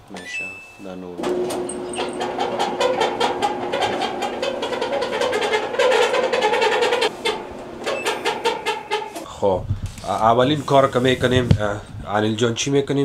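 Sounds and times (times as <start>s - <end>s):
clothes dryer squealing and rattling: 0.2s - 9.3s.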